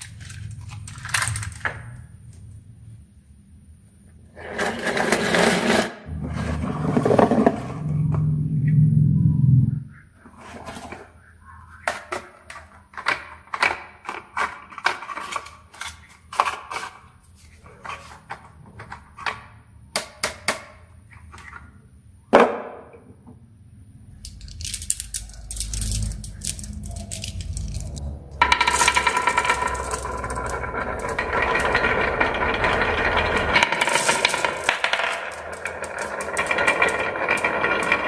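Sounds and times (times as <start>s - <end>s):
marble run rumble: 24.2s - 38.0s
marbles clattering down wooden run: 24.3s - 38.0s.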